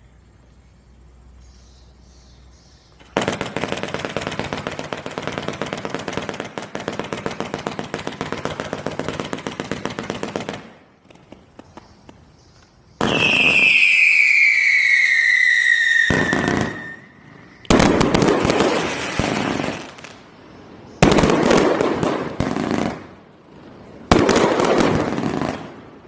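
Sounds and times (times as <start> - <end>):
firework cake launch shots: 3.0 - 11.8, 13.0 - 20.2, 24.0 - 26.0
scattered firework pops: 3.0 - 14.4, 17.6 - 20.2, 21.0 - 23.1.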